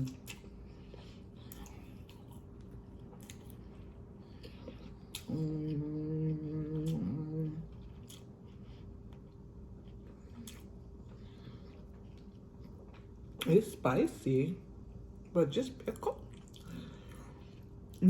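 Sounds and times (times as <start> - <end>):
woman chewing food: 0.0 - 13.5, 15.9 - 18.0
woman humming mmm: 5.2 - 7.8.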